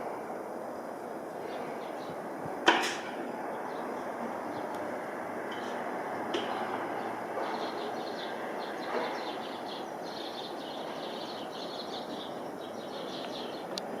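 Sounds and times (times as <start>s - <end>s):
outdoor background rumble: 0.0s - 14.0s
small birds chirping: 1.1s - 2.3s, 3.2s - 14.0s.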